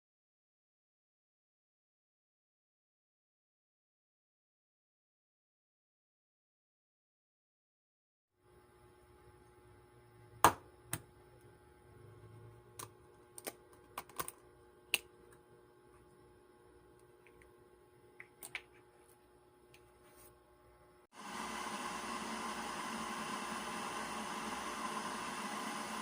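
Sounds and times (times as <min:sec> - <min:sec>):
faint steady hum: 0:08.4 - 0:26.0.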